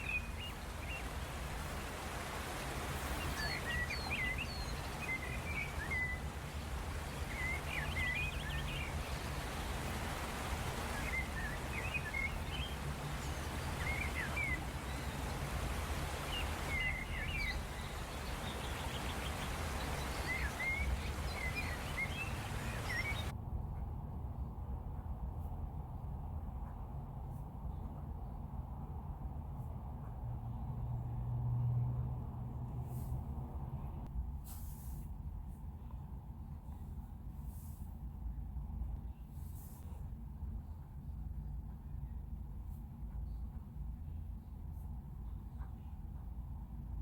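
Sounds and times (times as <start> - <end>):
small birds chirping: 0.0 - 23.3
outdoor background noise with rumble: 0.0 - 47.0.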